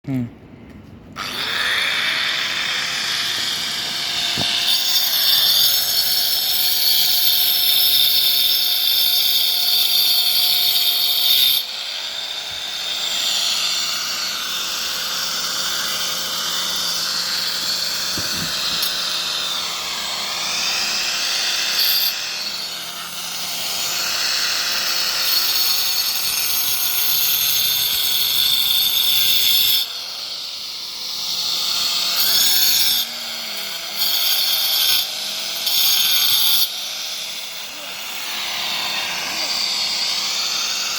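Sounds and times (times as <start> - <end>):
harsh grinding into wall: 1.2 - 29.9
power tool motor whining: 1.2 - 40.9.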